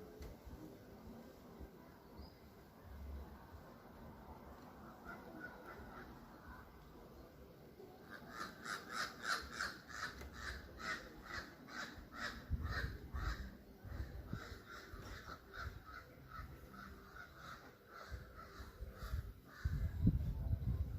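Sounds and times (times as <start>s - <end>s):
bird calling rapidly: 8.1s - 13.6s.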